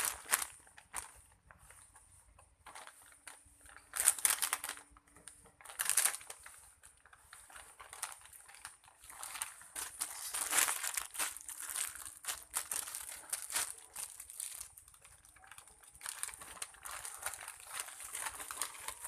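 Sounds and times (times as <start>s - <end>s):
foam toy squeezed and crushed: 9.2s - 15.0s.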